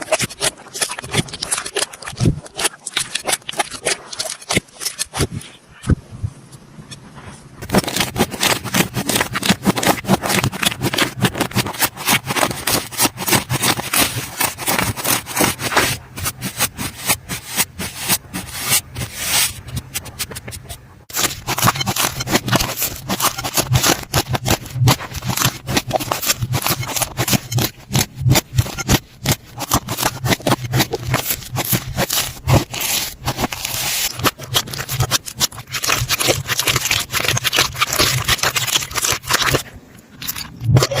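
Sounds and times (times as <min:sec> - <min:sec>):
slime squeezed crackling and popping: 0:21.1 - 0:41.0.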